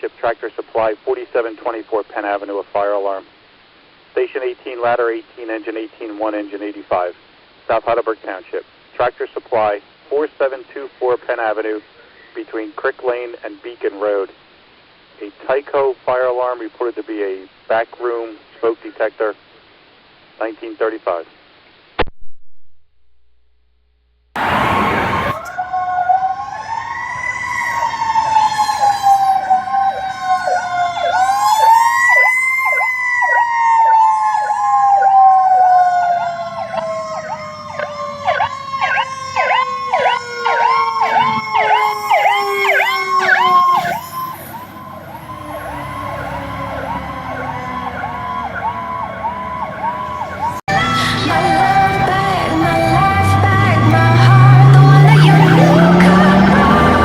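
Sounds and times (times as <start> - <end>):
siren fast yelp: 24.4 - 52.2, 52.9 - 57.0
siren wailing: 24.4 - 57.0
siren warble: 24.4 - 57.0.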